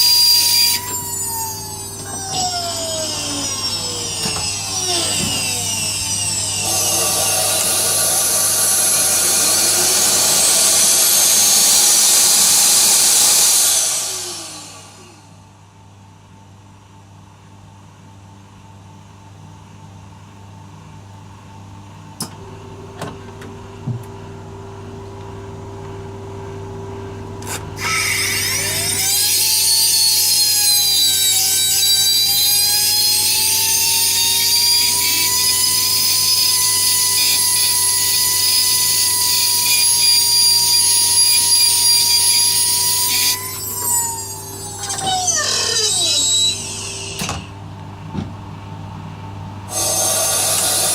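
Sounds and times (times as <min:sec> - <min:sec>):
high-speed tool whine: 0:00.0 - 0:15.4, 0:27.4 - 0:47.5, 0:49.7 - 0:50.9.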